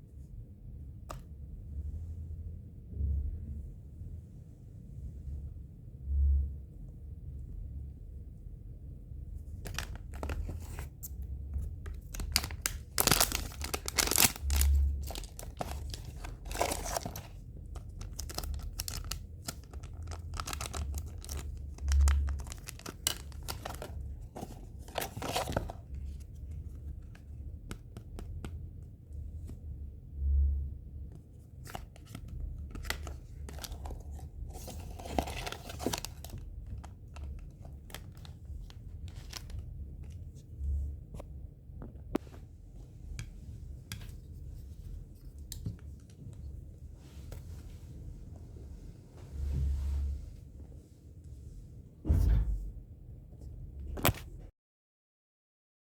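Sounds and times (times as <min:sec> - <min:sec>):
packaging tearing and crinkling: 0:09.7 - 0:10.8, 0:11.9 - 0:25.8, 0:32.7 - 0:39.6
low thuds: 0:52.0 - 0:52.8.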